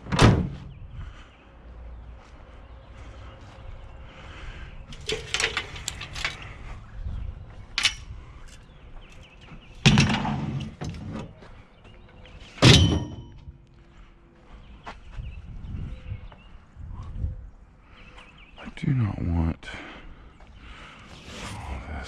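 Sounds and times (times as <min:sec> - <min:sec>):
scrap metal clanks and knocks: 0:04.9 - 0:06.6, 0:07.8 - 0:08.8, 0:09.8 - 0:11.4, 0:12.5 - 0:13.5
metallic ring: 0:12.6 - 0:13.5.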